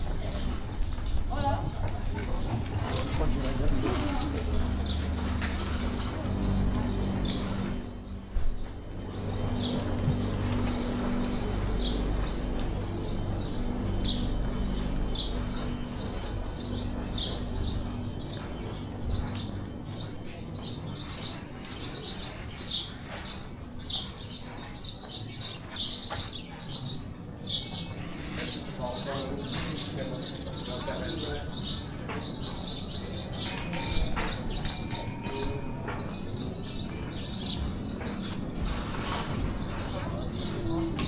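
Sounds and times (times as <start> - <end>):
small birds chirping: 0.0 - 41.0.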